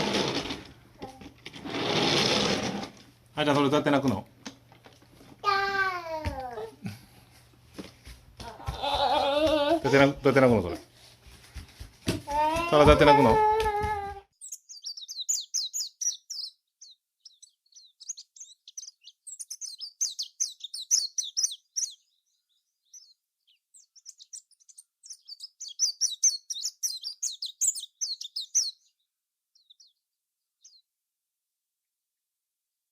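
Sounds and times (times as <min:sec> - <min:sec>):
birds chirping and twittering: 0:14.3 - 0:30.8.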